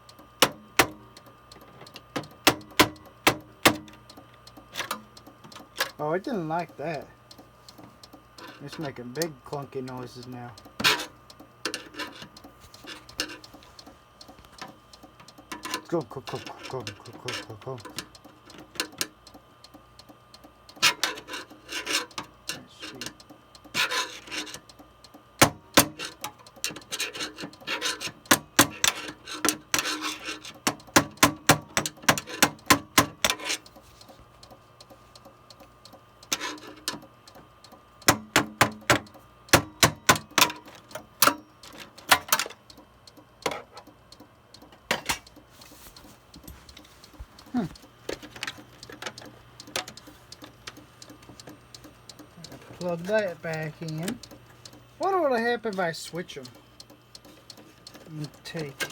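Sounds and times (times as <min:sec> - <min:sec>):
faint steady hum: 0:00.0 - 0:58.9
computer clicking and scraping: 0:08.4 - 0:19.1, 0:20.8 - 0:23.2, 0:23.8 - 0:24.8, 0:25.8 - 0:35.3, 0:36.2 - 0:37.4, 0:44.5 - 0:54.9.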